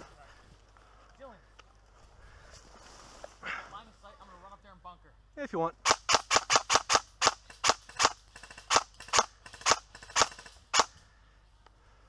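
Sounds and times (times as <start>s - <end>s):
airsoft gun firing: 5.8s - 11.0s.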